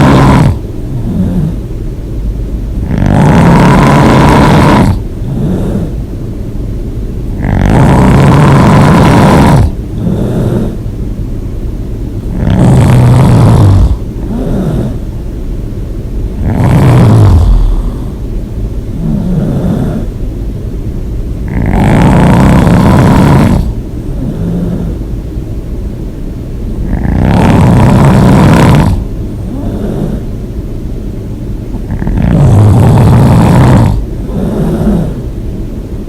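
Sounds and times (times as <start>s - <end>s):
person snoring loudly: 0.0s - 1.6s, 2.8s - 6.0s, 7.3s - 10.8s, 12.3s - 15.1s, 16.4s - 18.2s, 19.0s - 20.1s, 21.4s - 25.0s, 26.8s - 30.3s, 31.8s - 35.3s.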